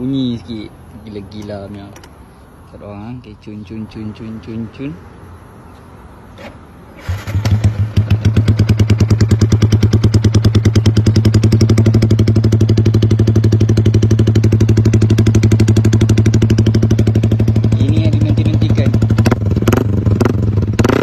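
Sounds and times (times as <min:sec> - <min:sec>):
motorcycle engine starting and idling: 0:06.3 - 0:21.0.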